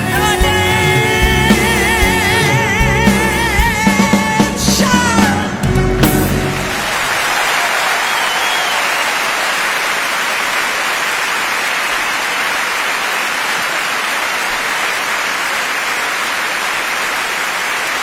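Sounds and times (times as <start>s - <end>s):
audience applauding: 6.5s - 18.0s.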